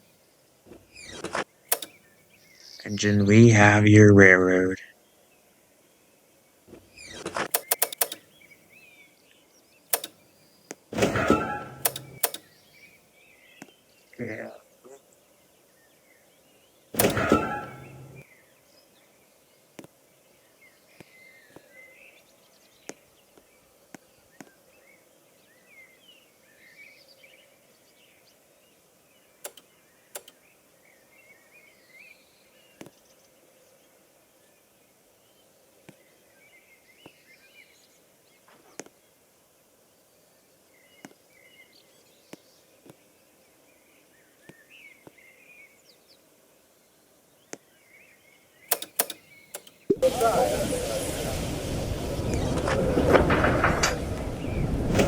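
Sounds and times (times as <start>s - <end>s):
low steady hiss: 0.0s - 55.0s
sharp clicks: 1.3s - 2.0s, 7.4s - 8.4s, 9.9s - 10.3s, 11.0s - 12.6s, 17.0s - 18.2s, 29.4s - 30.4s, 48.7s - 50.3s.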